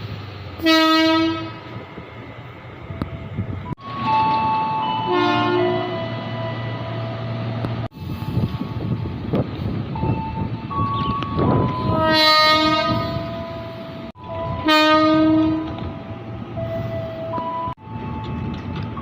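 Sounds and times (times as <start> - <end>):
train running hum: 0.0 - 19.0
train air horn blasts: 0.6 - 1.7, 5.0 - 6.1, 11.9 - 13.8, 14.5 - 15.8.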